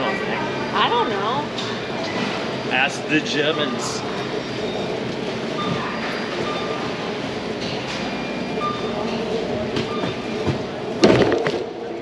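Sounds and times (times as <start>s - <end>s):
short electronic beeps: 0.0s - 7.0s, 8.0s - 9.2s
store hum and murmur: 0.0s - 12.0s.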